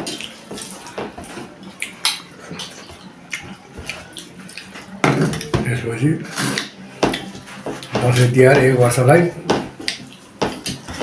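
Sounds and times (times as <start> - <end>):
eating mouth sounds: 0.0 - 5.5
plates and utensils clinking: 0.0 - 11.0.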